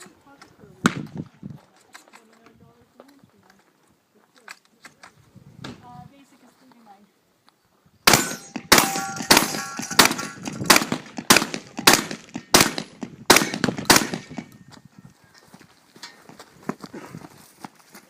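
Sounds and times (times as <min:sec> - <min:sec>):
shotgun shots: 0:08.0 - 0:14.5
steel targets ringing: 0:08.1 - 0:10.6.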